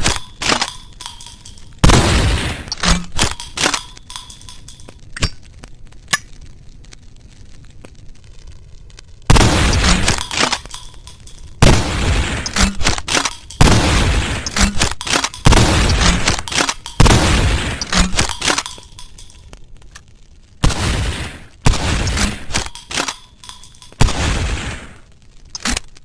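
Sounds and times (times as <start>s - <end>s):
shotgun shots: 0.0s - 4.8s, 9.3s - 19.4s, 20.6s - 25.0s.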